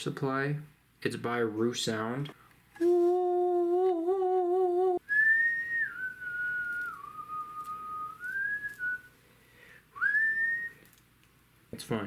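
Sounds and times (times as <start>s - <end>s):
person whistling a slow tune: 2.8s - 9.2s, 9.9s - 10.8s.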